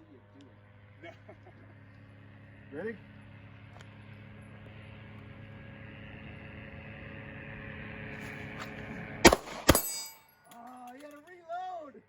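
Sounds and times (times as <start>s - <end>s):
steady low hum: 0.0s - 10.5s
pistol shots: 9.2s - 10.3s.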